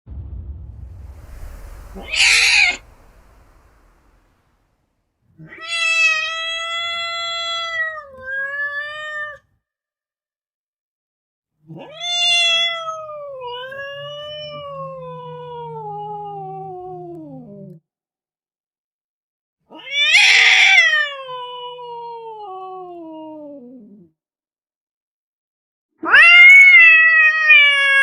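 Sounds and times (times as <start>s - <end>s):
low rumble: 0.0s - 4.8s
cat yowling angrily: 19.7s - 22.8s, 26.0s - 28.0s.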